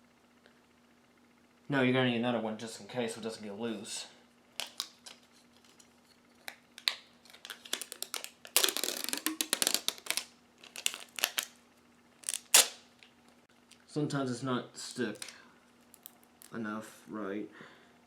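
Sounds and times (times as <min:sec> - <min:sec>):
tape clicks and crackles: 0:04.6 - 0:11.6, 0:12.2 - 0:13.8, 0:14.9 - 0:16.6
tape rasping off roll: 0:06.8 - 0:11.5.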